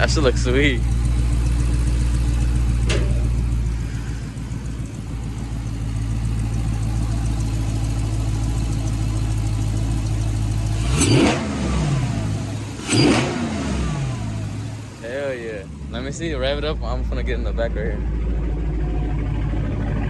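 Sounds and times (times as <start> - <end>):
car engine idling: 0.0 - 20.0
engine revving blips: 10.6 - 14.8.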